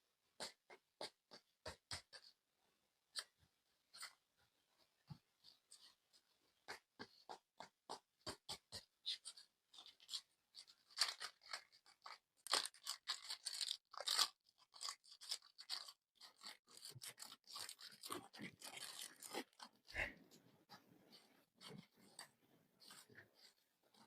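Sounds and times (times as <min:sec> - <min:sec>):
clay and packaging crackling: 0:06.7 - 0:24.0.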